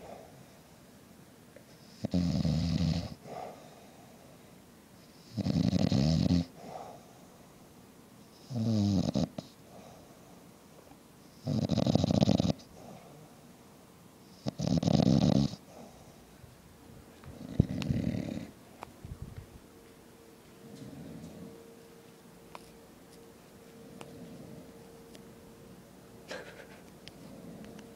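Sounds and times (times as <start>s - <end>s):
man snoring loudly: 2.0s - 3.2s, 5.3s - 6.5s, 8.5s - 9.3s, 11.4s - 12.6s, 14.5s - 15.6s
soft breath: 3.2s - 4.4s.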